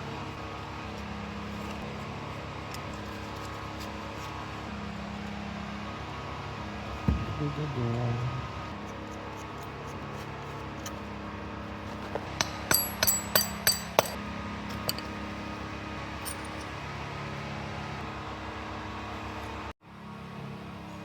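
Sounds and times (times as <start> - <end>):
engine running hum: 0.0 - 21.0
sharp metallic clinks: 12.4 - 14.2, 16.2 - 16.7.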